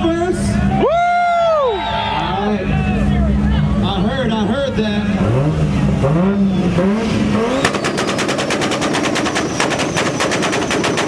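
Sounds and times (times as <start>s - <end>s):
car engine revving: 3.1s - 11.0s
exhaust pops and bangs: 7.0s - 11.0s.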